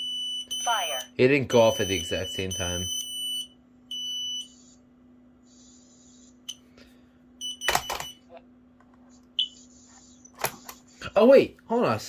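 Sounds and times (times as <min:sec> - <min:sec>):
smoke alarm beep: 0:00.0 - 0:04.7, 0:05.5 - 0:06.7, 0:07.4 - 0:08.3, 0:09.4 - 0:10.4.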